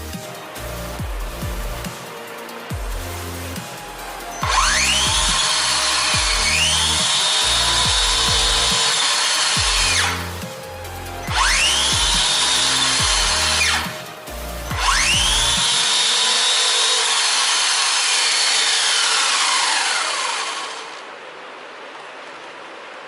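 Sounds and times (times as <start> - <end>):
background music with steady beat: 0.0 - 19.9
electric motor whining: 0.0 - 21.2.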